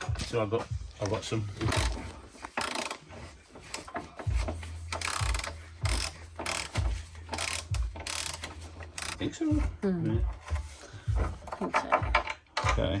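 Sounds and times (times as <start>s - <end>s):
ratchet wrench clicking: 1.6s - 3.0s, 3.7s - 9.3s.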